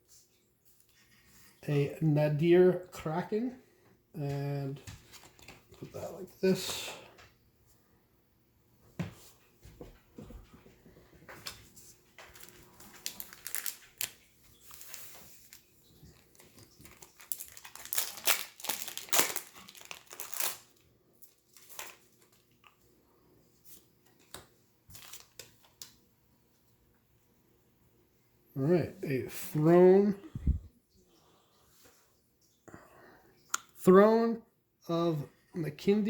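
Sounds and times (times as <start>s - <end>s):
wrapper crinkling and tearing: 12.2s - 22.6s, 24.9s - 25.9s.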